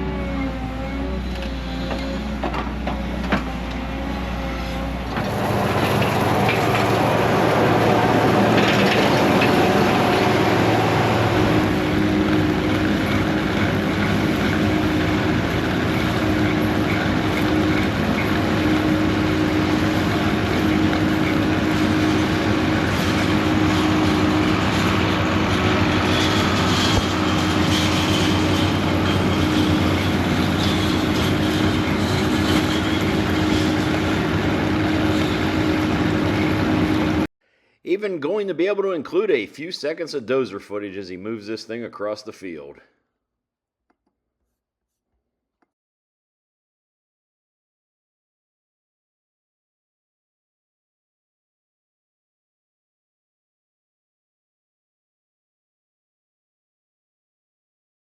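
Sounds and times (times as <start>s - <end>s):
diesel engine running under load: 0.0s - 37.3s.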